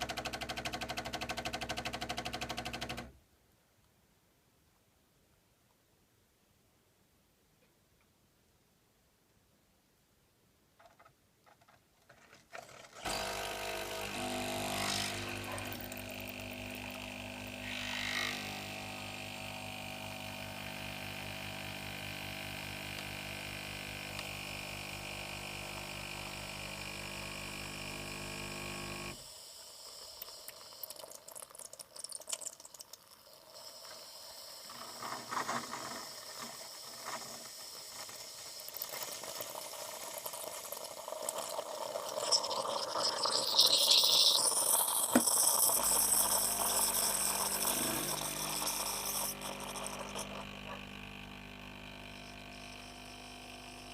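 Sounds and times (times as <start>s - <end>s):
coffee machine pump humming: 0.0s - 3.1s, 13.0s - 53.9s
coffee pouring into cup: 13.0s - 17.7s, 29.8s - 53.9s
faint liquid sounds: 29.4s - 50.9s.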